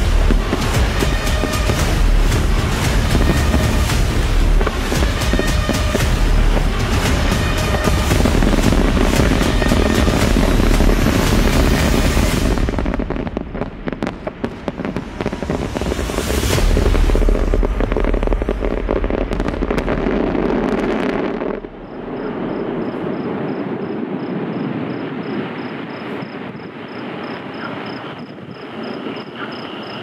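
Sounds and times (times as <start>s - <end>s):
fireworks crackling and booming: 0.0s - 30.0s
high insect chirp: 21.8s - 30.0s.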